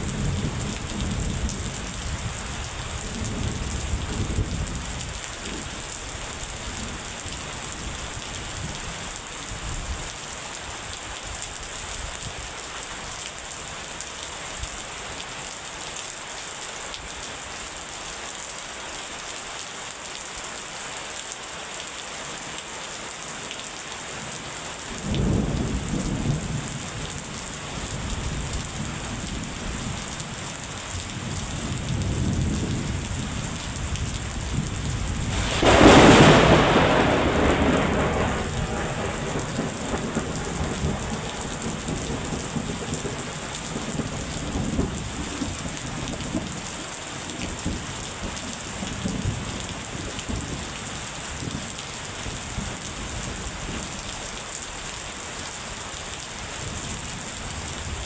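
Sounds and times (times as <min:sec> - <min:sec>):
thunder rumbling: 0:00.0 - 0:10.0, 0:24.9 - 0:30.1, 0:30.9 - 0:50.6
steady rain falling: 0:00.0 - 0:58.0.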